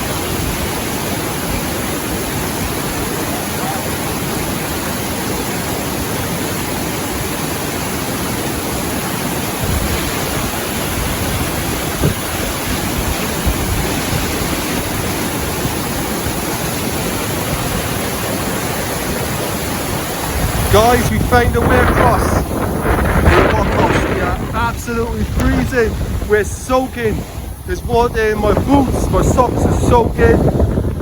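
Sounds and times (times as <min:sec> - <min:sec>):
rushing mountain stream: 0:00.0 - 0:31.0
wind buffeting microphone: 0:09.4 - 0:31.0.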